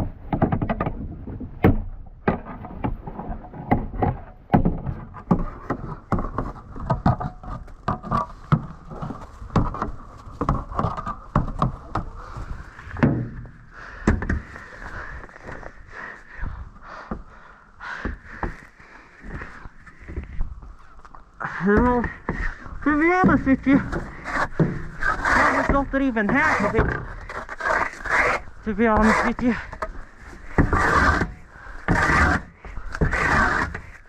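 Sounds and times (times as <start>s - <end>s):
snow shovelled off roof: 22.8s - 34.0s.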